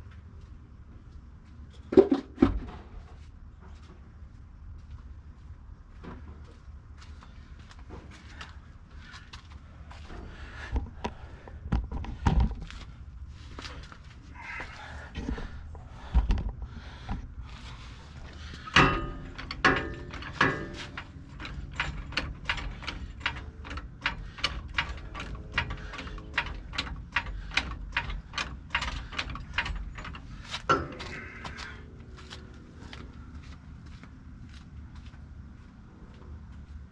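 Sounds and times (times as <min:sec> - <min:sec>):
ringing metal clanks: 0:18.6 - 0:31.7.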